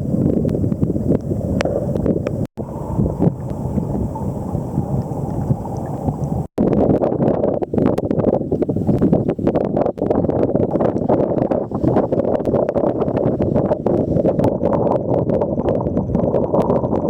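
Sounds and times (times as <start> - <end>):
wind buffeting microphone: 0.0 - 17.0
water rushing and splashing: 1.4 - 6.5.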